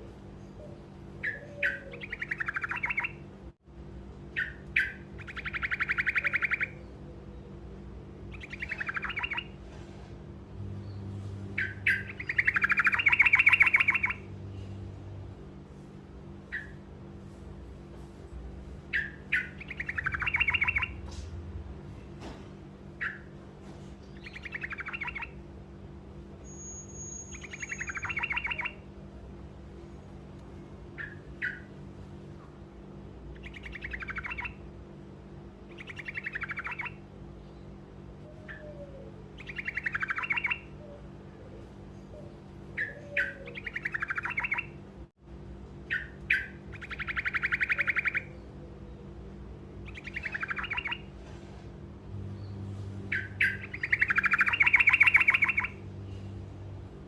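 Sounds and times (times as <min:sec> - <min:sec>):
low hum: 0:00.0 - 0:26.5, 0:27.2 - 0:57.0
songbird trilling: 0:00.4 - 0:03.2, 0:04.3 - 0:07.5, 0:08.2 - 0:09.6, 0:10.9 - 0:14.3, 0:16.4 - 0:16.8, 0:18.9 - 0:21.1, 0:23.0 - 0:23.3, 0:24.1 - 0:25.4, 0:26.4 - 0:28.8, 0:31.0 - 0:31.7, 0:33.3 - 0:34.6, 0:35.7 - 0:41.0, 0:42.0 - 0:44.8, 0:45.9 - 0:49.1, 0:49.8 - 0:51.1, 0:52.4 - 0:55.9.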